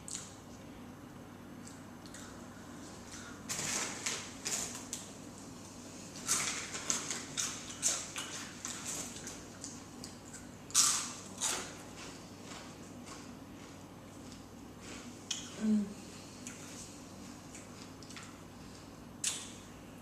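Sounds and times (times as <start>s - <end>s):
person chewing with mouth clicks: 0.0s - 0.4s, 1.6s - 2.4s, 7.4s - 15.7s, 16.3s - 16.8s, 17.5s - 19.5s.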